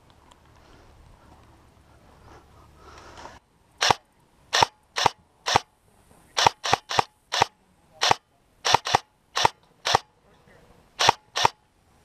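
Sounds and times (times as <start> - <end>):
airsoft gun shots: 3.8 - 5.7, 6.4 - 10.1, 11.0 - 11.6.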